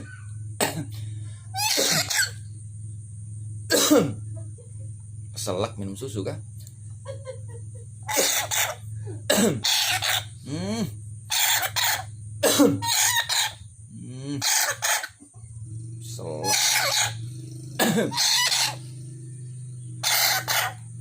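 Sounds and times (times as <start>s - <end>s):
parrot making choking calls: 1.5s - 2.4s, 8.1s - 15.3s, 16.2s - 21.0s.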